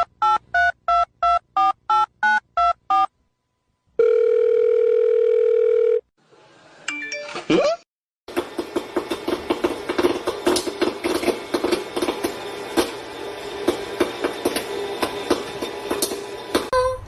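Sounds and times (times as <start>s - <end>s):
phone ringback tone: 4.0s - 6.1s.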